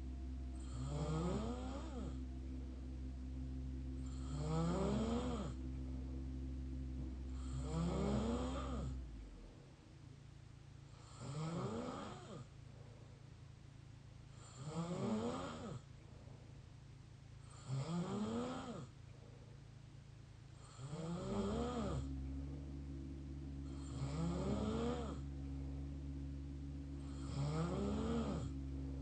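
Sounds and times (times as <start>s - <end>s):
steady low hum: 0.0s - 29.0s
person snoring: 0.5s - 2.3s, 4.0s - 6.2s, 7.0s - 9.0s, 10.9s - 12.5s, 14.3s - 15.8s, 17.5s - 18.9s, 20.6s - 22.7s, 23.6s - 25.8s, 27.0s - 29.0s.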